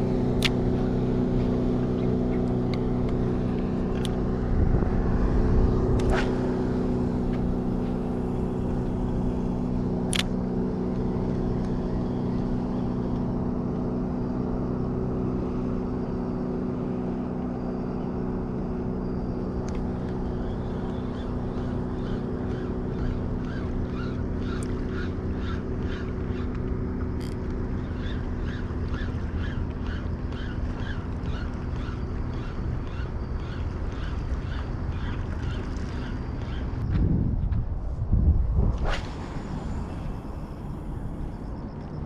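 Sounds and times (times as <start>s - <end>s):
boat engine humming: 0.0s - 42.0s.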